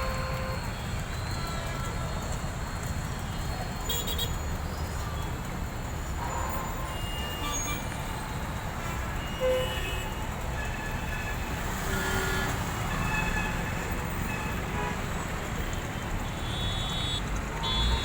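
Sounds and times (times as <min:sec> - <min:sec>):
traffic rumble: 0:00.0 - 0:18.0
car horn toots: 0:16.4 - 0:18.0.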